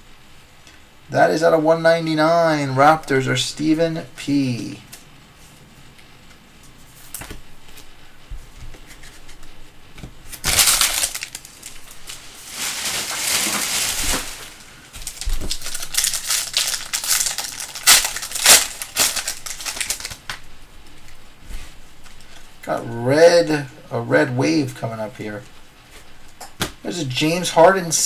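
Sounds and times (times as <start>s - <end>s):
foil wrapper crinkling: 10.3s - 21.2s.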